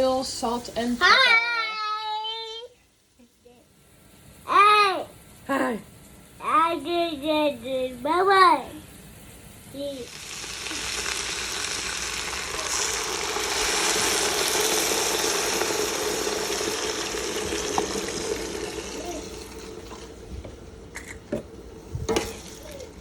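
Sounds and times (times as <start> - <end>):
chickpeas sizzling in hot oil: 9.0 - 20.2, 22.1 - 23.0.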